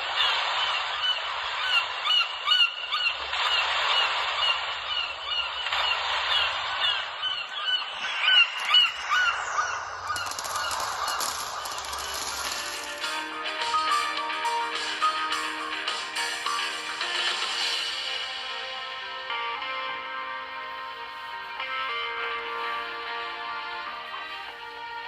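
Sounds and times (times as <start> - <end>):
recorded bird calls ringtone: 1.0 - 13.1
steady hiss: 10.5 - 19.3.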